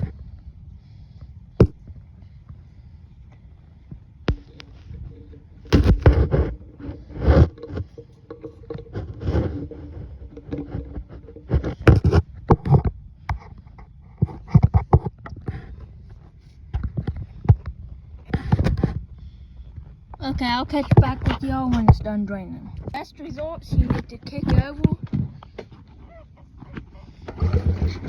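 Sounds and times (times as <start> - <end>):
faint steady ringing tone: 0.0 - 26.4
objects knocking and clattering: 4.3 - 13.6.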